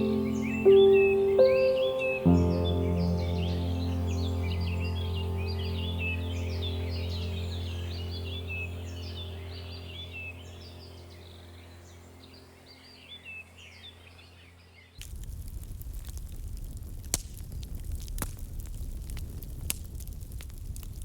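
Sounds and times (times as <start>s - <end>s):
quiet background music: 0.0s - 13.7s
birds chirping: 0.0s - 15.0s
cooking fire crackling: 15.0s - 21.0s
fire popping: 15.0s - 21.0s.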